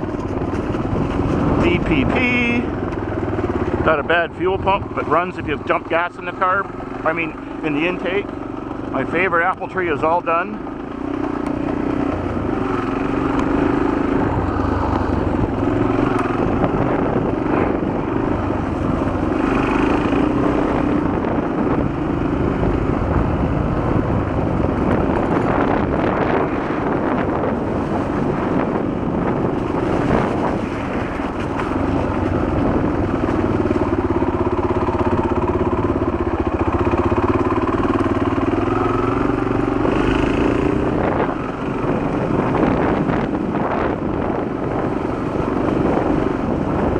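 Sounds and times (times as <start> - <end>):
motorcycle engine revving: 0.0 - 46.9.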